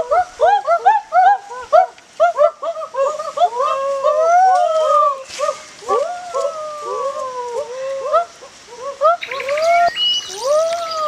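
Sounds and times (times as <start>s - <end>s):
small animals crying: 8.8s - 11.0s
drawn-out whining calls: 9.2s - 11.0s.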